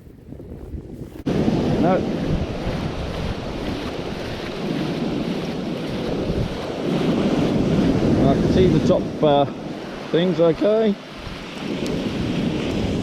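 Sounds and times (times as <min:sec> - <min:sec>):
wind buffeting microphone: 0:00.0 - 0:13.0
waves washing on beach: 0:01.1 - 0:13.0.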